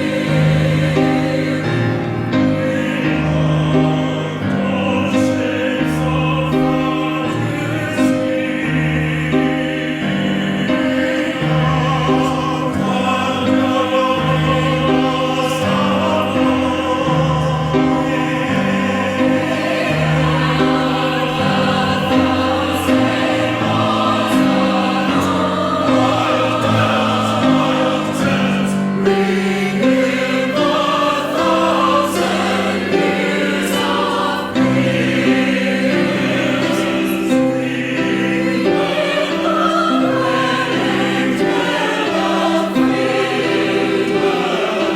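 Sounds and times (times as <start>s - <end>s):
choir singing in parts: 0.0s - 44.9s.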